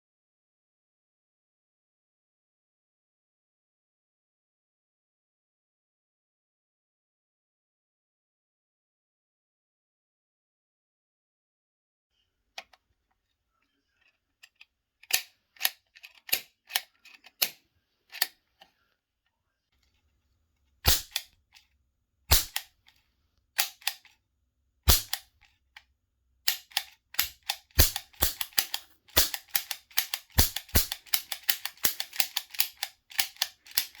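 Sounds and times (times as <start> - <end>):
toy cap gun bangs: 20.9 - 21.3, 22.3 - 22.7, 23.6 - 24.1, 24.9 - 25.3, 26.5 - 34.0.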